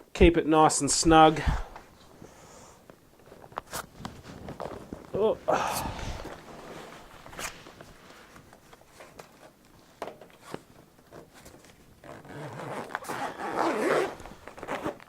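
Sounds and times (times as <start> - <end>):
small clicks and rustles: 2.8 - 5.2, 6.3 - 12.0
rasping zip: 12.0 - 15.0.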